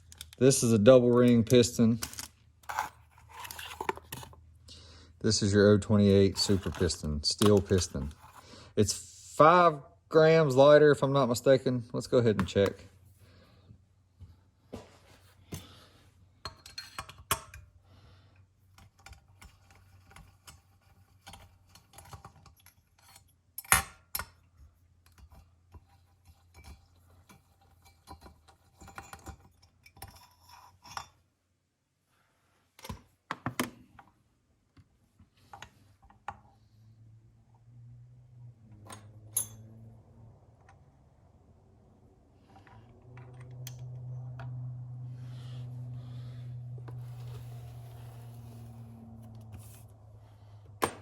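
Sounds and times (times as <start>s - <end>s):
metal parts clicking and clinking: 0.0s - 4.4s, 38.8s - 39.7s.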